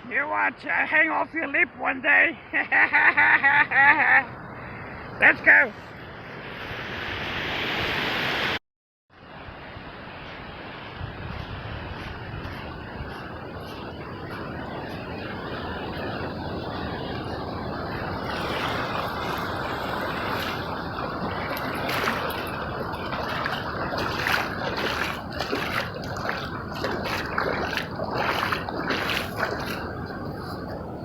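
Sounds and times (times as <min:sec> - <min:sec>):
sea surf washing on beach: 0:09.4 - 0:31.0.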